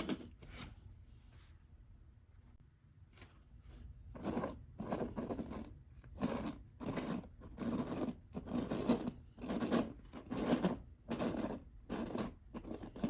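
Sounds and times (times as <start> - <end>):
small objects scraping and rubbing: 4.2 - 13.0.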